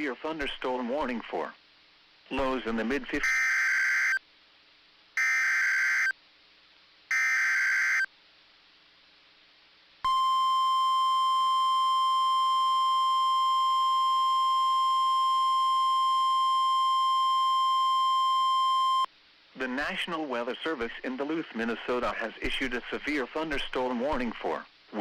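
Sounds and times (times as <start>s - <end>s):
steady high alarm beep: 5.2s - 6.1s, 7.1s - 8.1s, 10.1s - 19.1s.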